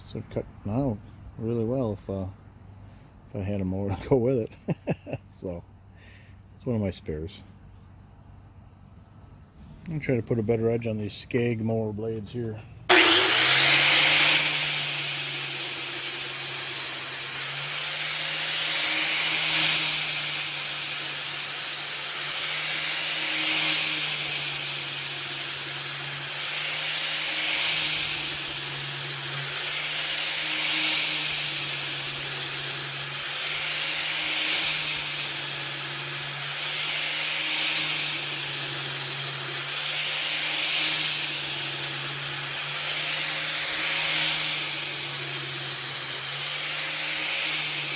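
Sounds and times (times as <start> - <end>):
angle grinder grinding steel: 12.9 - 47.9.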